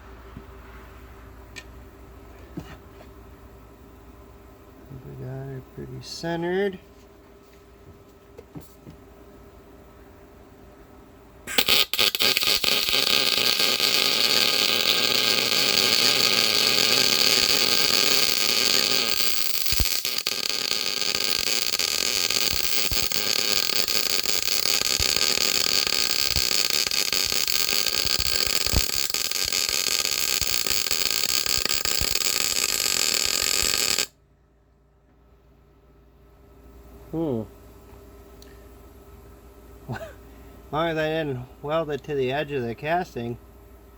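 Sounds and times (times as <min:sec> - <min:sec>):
electric arc welder crackling: 0:11.5 - 0:34.1.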